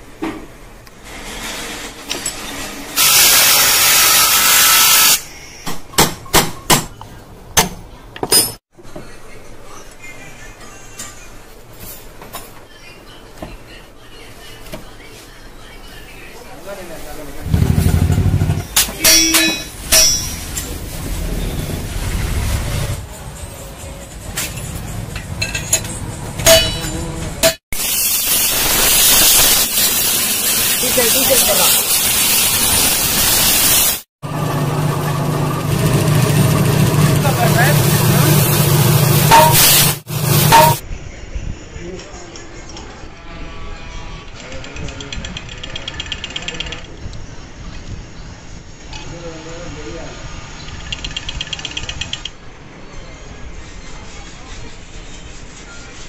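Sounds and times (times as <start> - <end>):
gas hissing: 27.8 - 34.0, 37.0 - 40.8.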